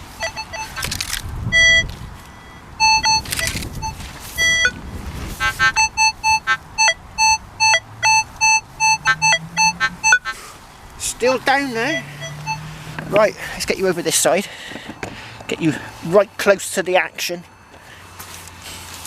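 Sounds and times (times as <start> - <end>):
metal detector beeps: 0.1 - 4.8, 5.4 - 10.3, 11.2 - 12.7.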